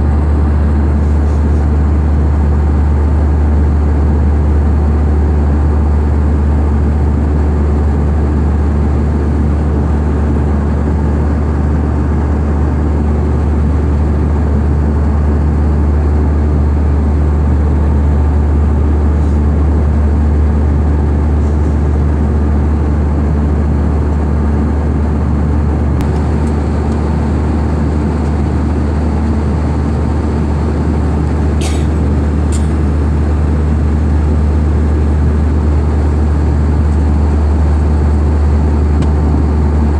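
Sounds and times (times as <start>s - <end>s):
aircraft cabin engine drone: 0.0s - 39.9s.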